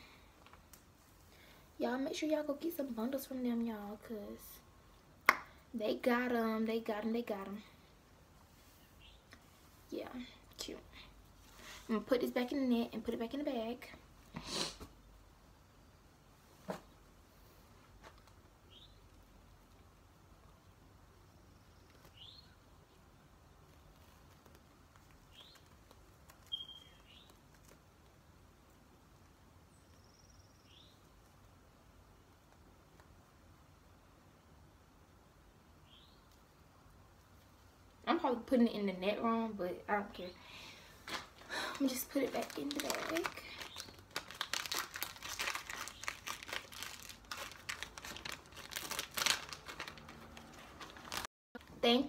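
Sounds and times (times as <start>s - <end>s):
faint bird chirps: 8.7s - 9.4s, 18.7s - 19.1s, 21.2s - 23.3s, 25.3s - 25.8s, 26.4s - 27.4s, 29.7s - 31.1s, 35.8s - 36.3s
high bird whistle: 26.5s - 27.2s
bag crinkling: 41.1s - 51.3s.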